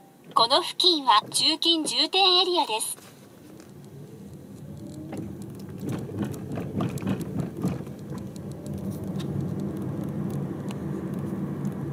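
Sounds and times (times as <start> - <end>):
car engine and road hum: 0.0 - 11.9
irregular clicks and knocks: 4.6 - 11.8.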